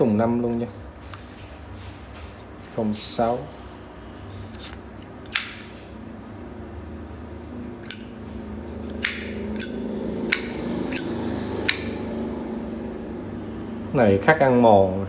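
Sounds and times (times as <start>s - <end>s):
lighter case clicking: 9.0s - 11.1s.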